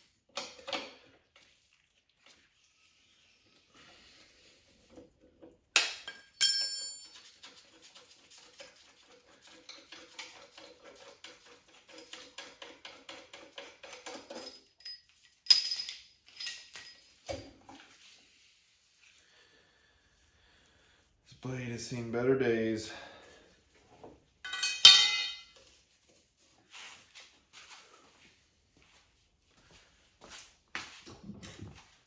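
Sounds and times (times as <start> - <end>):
metal hand tools clinking: 5.8 - 7.2, 13.9 - 17.3, 24.4 - 25.6.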